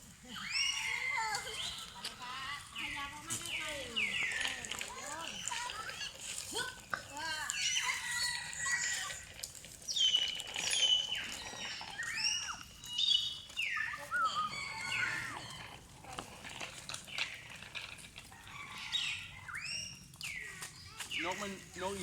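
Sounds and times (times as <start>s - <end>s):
birds whistling: 0.4s - 2.0s, 2.6s - 5.9s, 7.5s - 9.2s, 9.8s - 15.8s, 18.5s - 22.0s.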